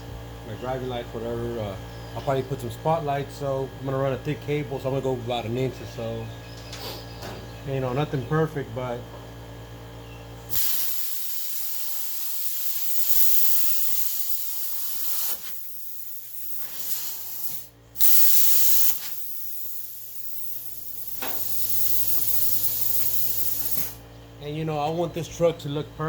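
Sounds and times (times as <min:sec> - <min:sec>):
plasma cutter hissing: 0:10.5 - 0:24.0.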